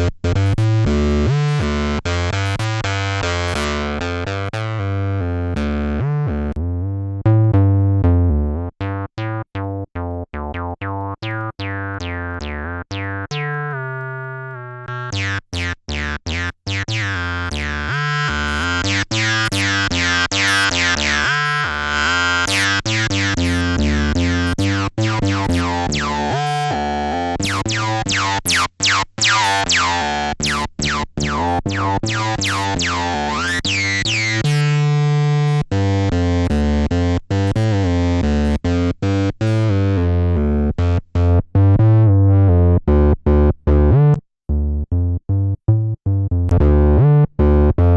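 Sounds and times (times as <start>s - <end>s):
acid synth bassline: 0.0s - 40.9s, 41.9s - 47.9s.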